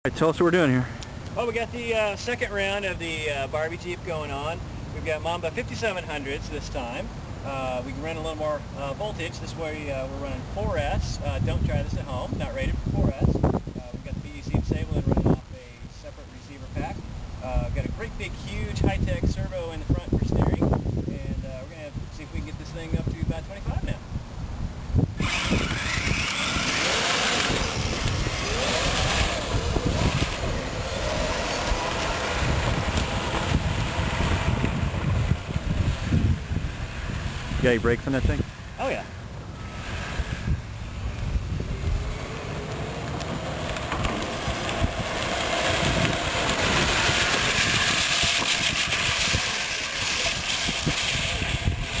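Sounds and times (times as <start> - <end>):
steady rushing noise: 0.1 - 52.0
electric motors whining: 25.0 - 52.0.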